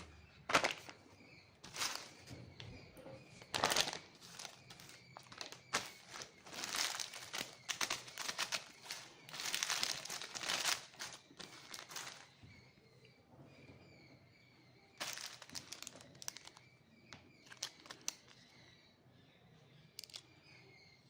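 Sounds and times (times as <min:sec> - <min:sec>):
snack packet crinkling: 0:00.5 - 0:01.0, 0:01.6 - 0:02.3, 0:03.4 - 0:12.3, 0:15.0 - 0:16.6, 0:17.4 - 0:18.4, 0:20.0 - 0:20.2.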